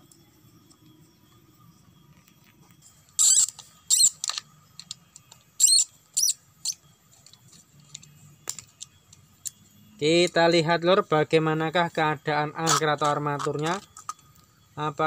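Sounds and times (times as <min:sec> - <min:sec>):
high-pitched scraping squeaks: 0:02.8 - 0:04.5, 0:05.6 - 0:07.7.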